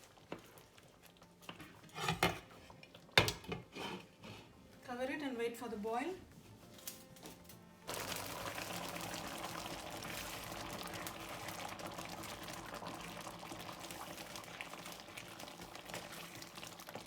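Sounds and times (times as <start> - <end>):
sauce bubbling with small pops: 8.6 - 17.0.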